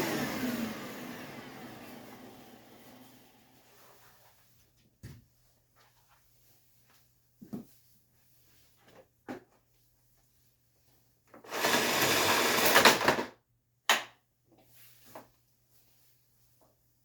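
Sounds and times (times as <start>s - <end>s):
vacuum cord rewinding whir: 0.0s - 3.6s, 11.5s - 13.2s.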